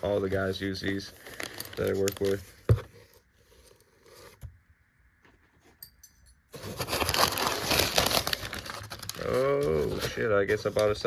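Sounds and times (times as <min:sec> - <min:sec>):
packaging rustling and crinkling: 0:00.0 - 0:04.4, 0:06.6 - 0:11.0.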